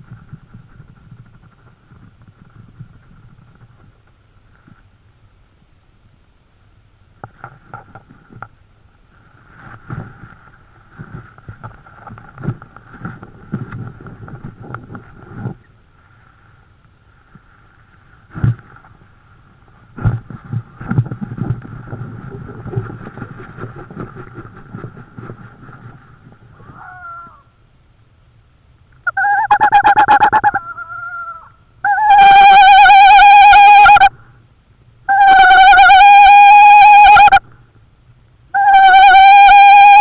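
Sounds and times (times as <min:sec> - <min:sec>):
high two-tone hum: 0:29.1 - 0:30.6.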